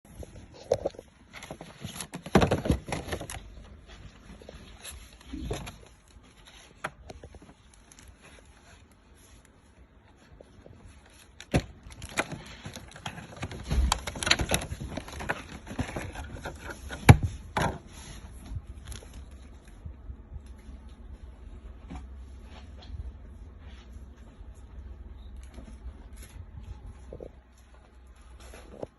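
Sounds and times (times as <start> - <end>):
packaging scraping and rubbing: 0.1 - 19.6.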